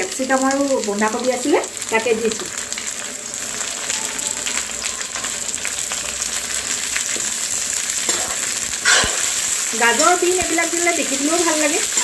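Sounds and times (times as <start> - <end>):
vegetables sizzling in hot oil: 0.0 - 12.0.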